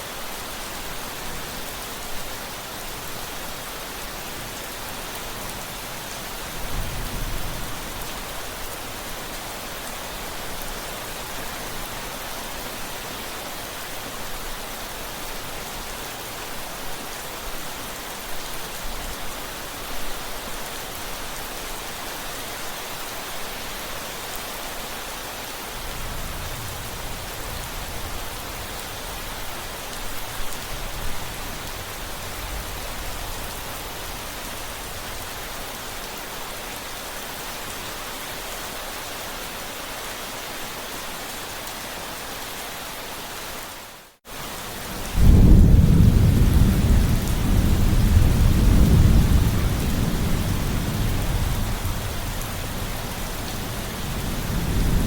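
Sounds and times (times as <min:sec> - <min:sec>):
rain falling: 0:00.0 - 0:55.0
low rolling thunder: 0:44.8 - 0:55.0.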